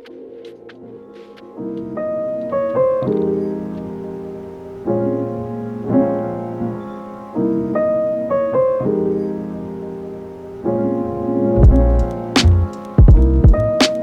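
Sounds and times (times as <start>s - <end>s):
piano chords: 0.0s - 14.0s
low drum beat: 11.6s - 13.8s.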